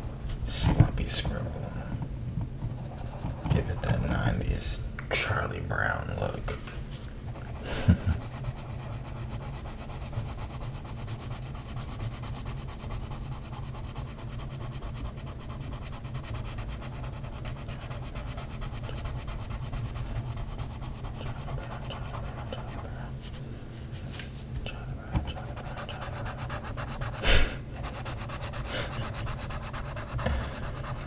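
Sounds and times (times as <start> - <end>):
colored pencil shading on paper: 7.3 - 23.1, 25.3 - 31.0.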